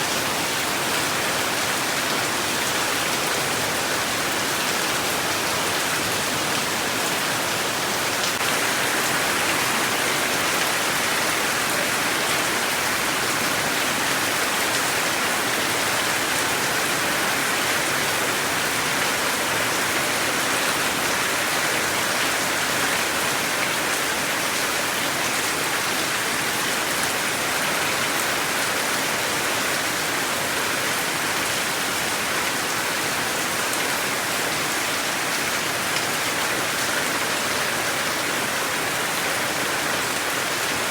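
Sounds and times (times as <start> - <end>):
heavy rain spattering: 0.1 - 26.6.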